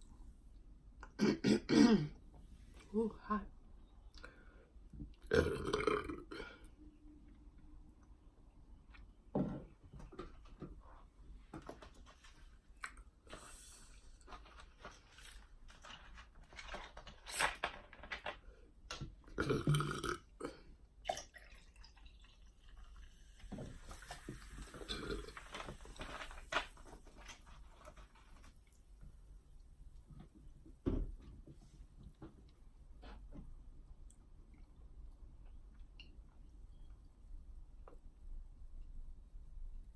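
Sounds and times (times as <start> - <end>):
woman burping: 1.0 - 2.2, 5.3 - 6.6, 19.4 - 20.6
eating and mouth noises: 23.8 - 26.6.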